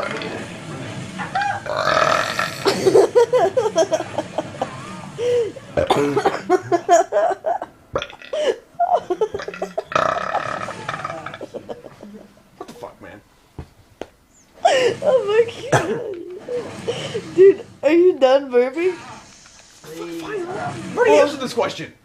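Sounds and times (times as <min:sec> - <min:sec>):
person burping loudly: 0:01.6 - 0:03.0, 0:05.8 - 0:06.5, 0:07.9 - 0:08.6, 0:09.3 - 0:11.6.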